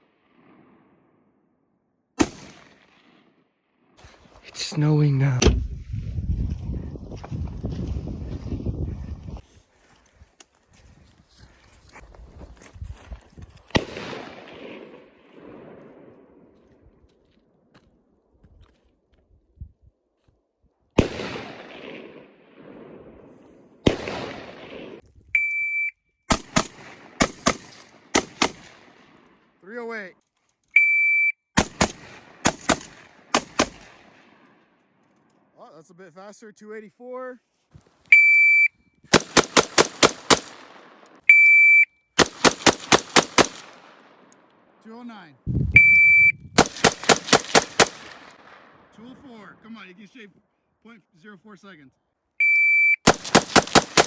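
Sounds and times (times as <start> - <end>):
gunshots with echo: 2.2 - 3.1, 23.8 - 25.0, 46.1 - 48.9, 53.1 - 54.0
rapid rifle shots: 23.8 - 25.0, 26.3 - 29.2, 31.6 - 34.3, 39.1 - 41.0, 42.2 - 44.2, 46.6 - 48.8, 53.1 - 54.0
rapid gunshots: 26.3 - 28.9, 31.6 - 34.0, 39.1 - 40.9, 42.2 - 43.9, 46.6 - 48.6, 53.1 - 54.0
shot timer beep: 38.2 - 38.7, 45.7 - 46.6, 52.4 - 53.0.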